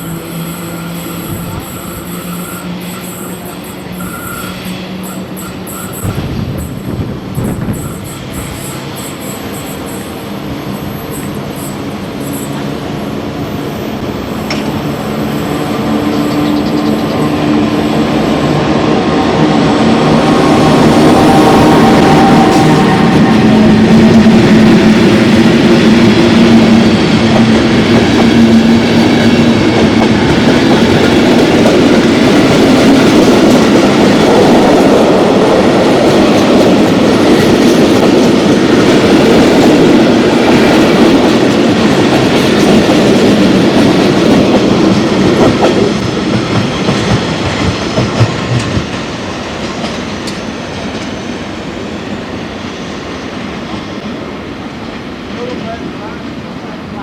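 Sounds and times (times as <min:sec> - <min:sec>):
diesel locomotive engine hum: 0:00.0 - 0:57.0
train wheels clattering: 0:20.2 - 0:51.2.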